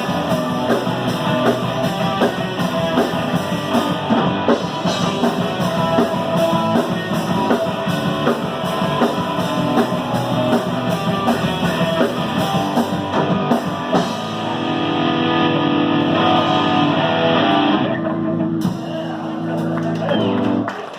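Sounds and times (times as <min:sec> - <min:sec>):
drum kit: 0:00.0 - 0:20.8
electric guitars: 0:00.0 - 0:20.9.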